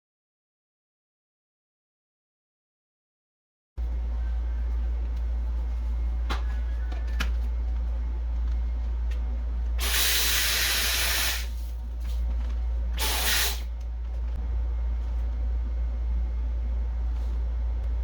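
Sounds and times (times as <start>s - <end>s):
steady low hum: 3.8s - 18.0s
loud hissing bursts: 9.8s - 11.7s, 13.0s - 13.7s.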